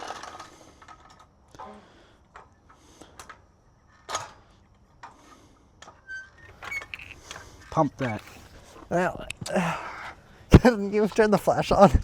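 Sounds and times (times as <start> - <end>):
clicks and knocks of metal parts: 5.0 - 8.5.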